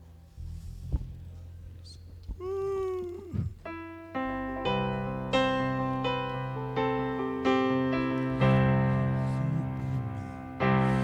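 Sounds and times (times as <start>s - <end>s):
electric keyboard chords: 3.5s - 11.0s.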